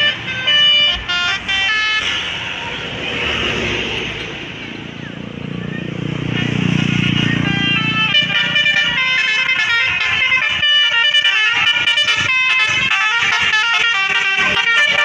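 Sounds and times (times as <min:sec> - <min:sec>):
musical air horn melody: 0:00.0 - 0:02.3, 0:07.0 - 0:15.0.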